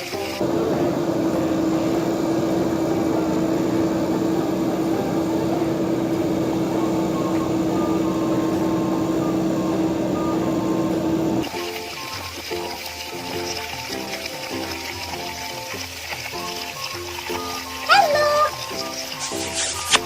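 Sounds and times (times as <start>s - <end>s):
backhoe engine rumbling: 0.4s - 11.5s.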